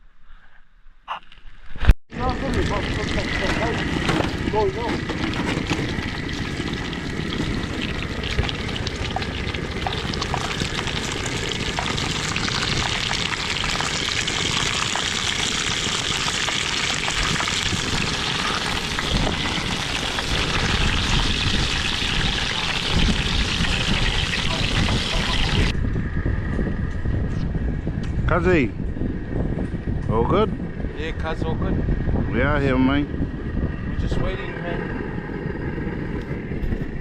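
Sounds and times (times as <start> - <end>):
meat sizzling on a grill: 2.2 - 25.7.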